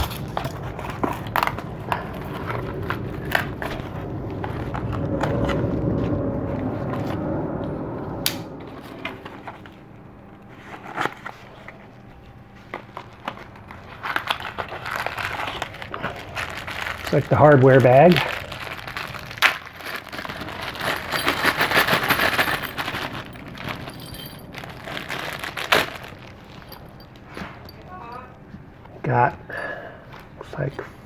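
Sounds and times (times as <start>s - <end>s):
cardboard and wrapping rustling: 0.0s - 6.3s, 10.4s - 28.3s.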